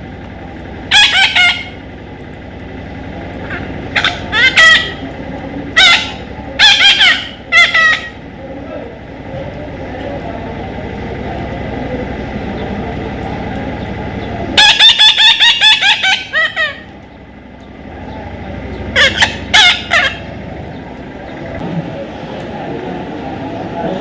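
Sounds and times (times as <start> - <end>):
parrot squawking: 0.9 - 1.8, 3.4 - 8.3, 14.4 - 17.0, 18.9 - 20.4.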